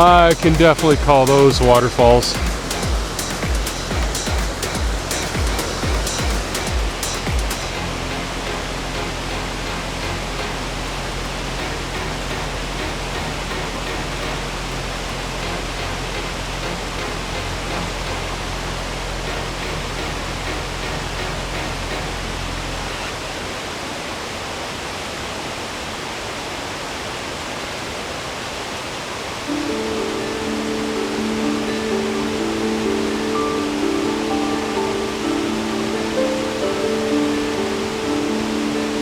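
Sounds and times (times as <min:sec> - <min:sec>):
waterfall roaring: 0:00.0 - 0:39.0.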